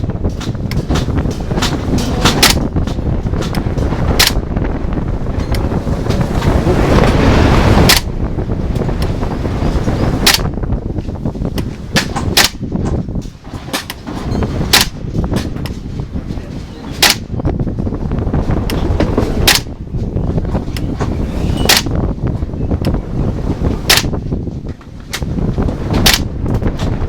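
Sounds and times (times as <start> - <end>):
wind buffeting microphone: 0.0 - 27.0
bolt blowback clack: 0.1 - 15.9, 16.9 - 17.6, 18.5 - 23.0, 23.6 - 27.0
airsoft rifle shots: 2.3 - 2.7, 4.2 - 4.4, 10.2 - 10.5, 12.3 - 12.6, 14.7 - 15.0, 17.0 - 17.3, 23.9 - 24.2.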